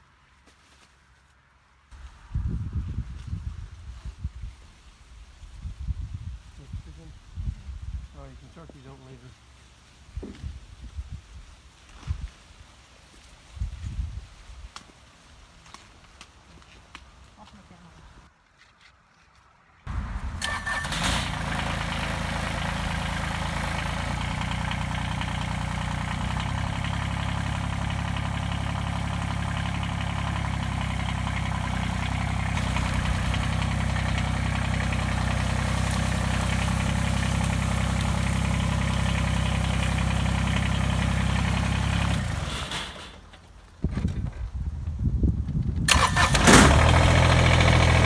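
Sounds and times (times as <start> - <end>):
motor running: 19.9 - 42.9.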